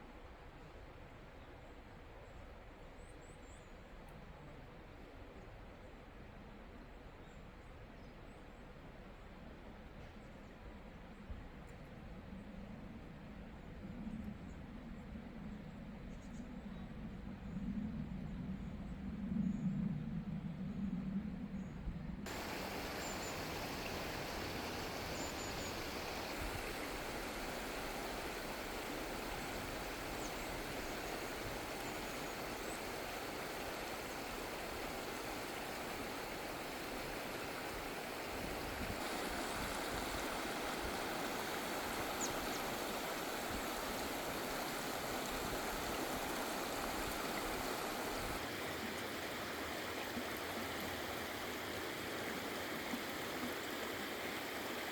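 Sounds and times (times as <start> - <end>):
stream water rushing: 22.3 - 54.9.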